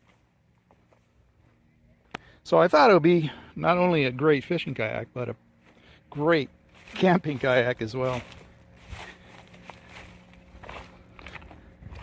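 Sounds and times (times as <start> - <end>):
faint soft footsteps: 0.0 - 2.3, 6.6 - 12.0.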